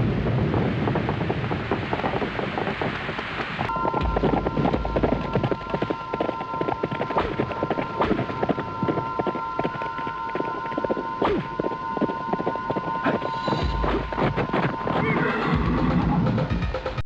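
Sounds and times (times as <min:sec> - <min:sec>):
dense rush of noise: 0:00.0 - 0:17.0
steady high tones: 0:03.7 - 0:17.0.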